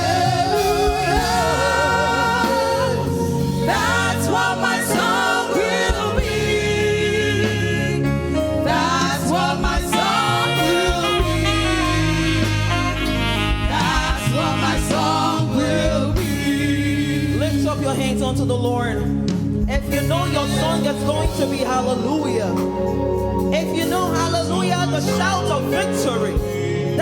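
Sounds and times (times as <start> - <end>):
person singing: 0.0 - 17.9
band accompaniment: 0.0 - 27.0.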